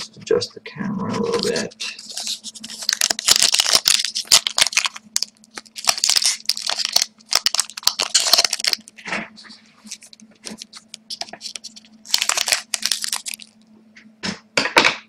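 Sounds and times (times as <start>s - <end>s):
wrapper crinkling and tearing: 1.2s - 9.0s, 9.8s - 13.6s.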